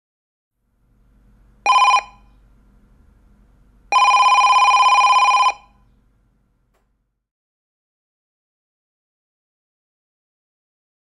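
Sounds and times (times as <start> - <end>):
faint low hum: 0.6 - 7.2
telephone ringing: 1.6 - 2.4, 3.9 - 5.8.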